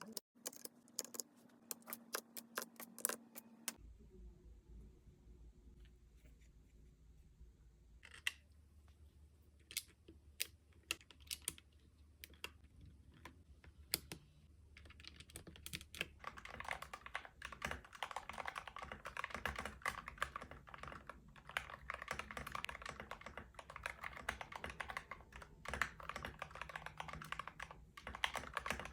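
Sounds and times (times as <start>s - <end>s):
mechanical keyboard typing: 0.0s - 3.8s, 14.8s - 28.9s.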